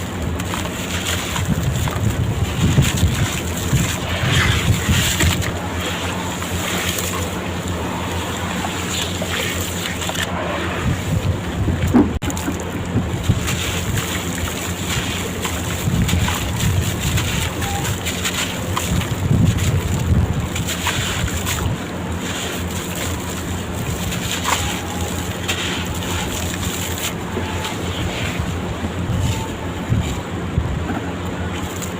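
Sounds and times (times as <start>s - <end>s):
blocks crackling apart in water: 0.0s - 7.8s, 11.8s - 27.9s.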